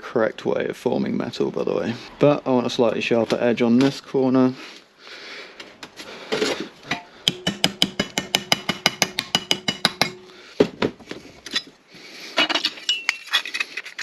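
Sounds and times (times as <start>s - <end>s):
hammer striking sheet steel: 6.9s - 10.3s.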